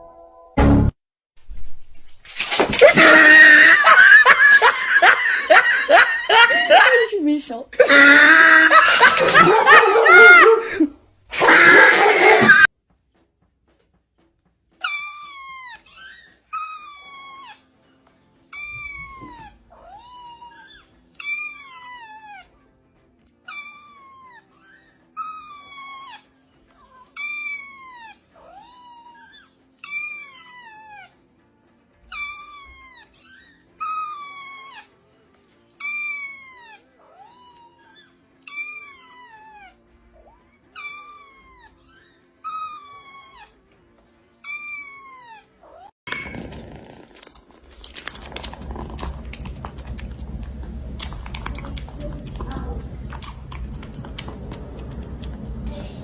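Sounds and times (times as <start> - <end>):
cat meowing: 18.5 - 22.5, 35.8 - 39.8, 44.4 - 46.4.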